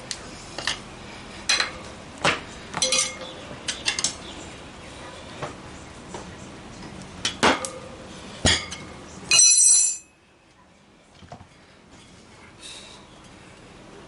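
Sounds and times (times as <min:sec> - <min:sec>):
loud ringing clink: 0:09.3 - 0:10.1.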